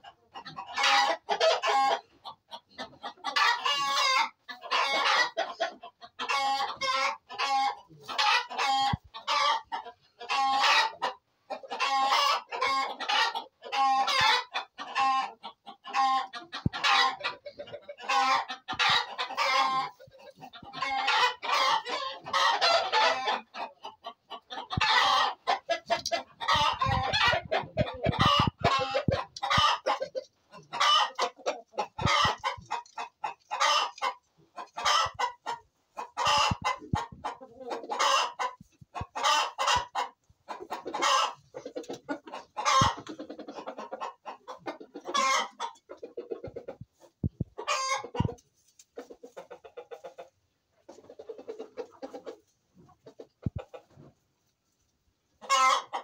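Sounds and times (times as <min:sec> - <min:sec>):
chickens clucking: 0:00.0 - 0:56.0
roosters crowing: 0:20.8 - 0:23.5, 0:24.7 - 0:32.9.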